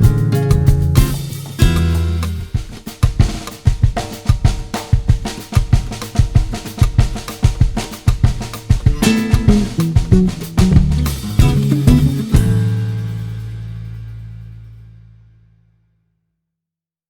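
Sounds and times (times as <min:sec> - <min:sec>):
bass and guitar: 0:00.0 - 0:02.6, 0:08.9 - 0:15.5
drum kit beat: 0:00.0 - 0:14.4.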